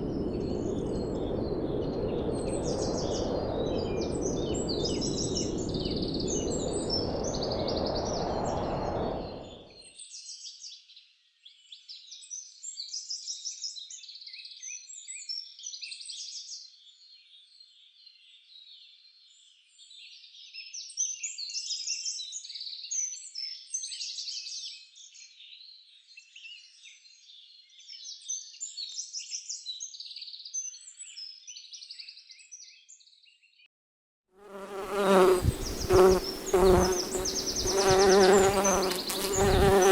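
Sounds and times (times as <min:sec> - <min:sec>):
steady rushing noise: 0:00.0 - 0:09.7, 0:35.3 - 0:39.9
songbirds chirping and trilling: 0:34.8 - 0:39.9.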